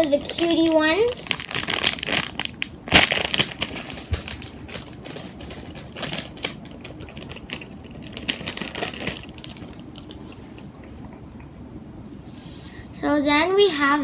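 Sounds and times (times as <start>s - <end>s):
plastic packaging crinkling: 0.0s - 10.7s.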